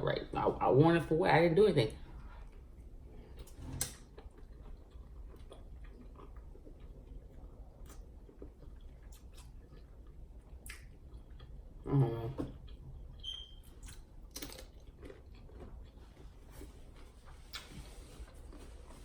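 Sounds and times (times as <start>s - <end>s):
person chewing food: 2.2s - 11.8s, 12.5s - 19.0s
wet mouth clicks: 17.5s - 17.8s.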